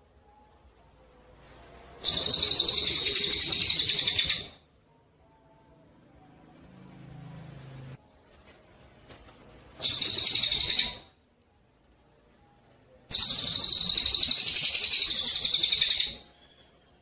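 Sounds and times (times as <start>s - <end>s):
faint high whistle: 0.0s - 6.6s, 9.0s - 17.0s
songbird buzzing trills: 2.0s - 4.6s.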